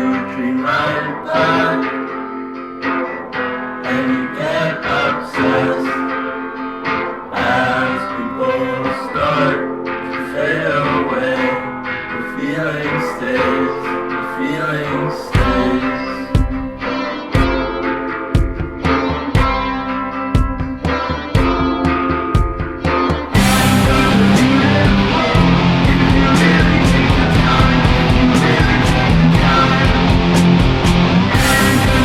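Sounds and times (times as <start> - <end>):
guitar-led song: 0.0 - 32.0
heavy low beat: 16.4 - 32.0.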